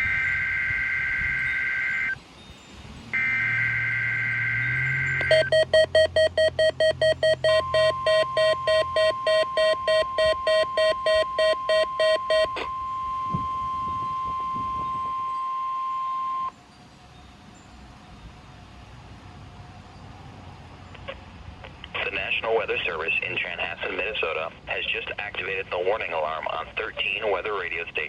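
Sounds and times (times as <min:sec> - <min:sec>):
steady warning alarm tone: 0:00.0 - 0:02.2, 0:03.1 - 0:16.5
rapid alert beeping: 0:03.2 - 0:12.9.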